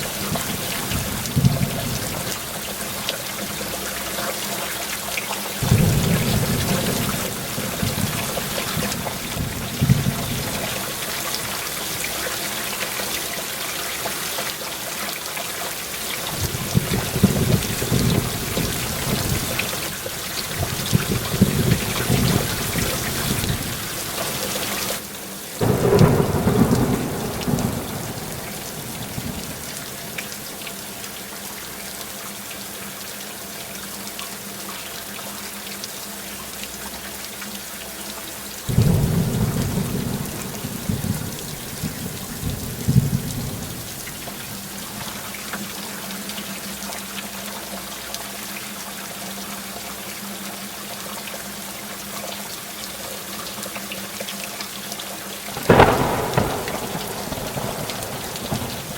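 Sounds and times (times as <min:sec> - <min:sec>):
heavy rain falling: 0:00.0 - 0:58.9
thunder rumbling: 0:05.6 - 0:11.2, 0:16.4 - 0:24.8, 0:25.6 - 0:30.2, 0:38.7 - 0:44.4, 0:55.6 - 0:58.9.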